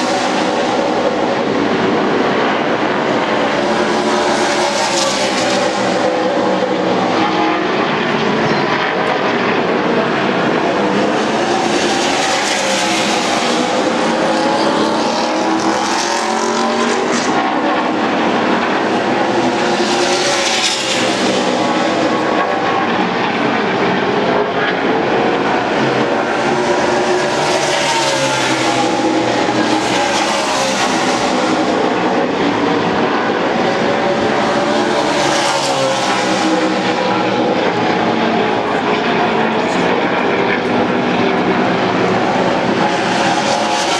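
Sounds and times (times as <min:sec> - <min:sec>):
race car engines droning: 0:00.0 - 0:43.9.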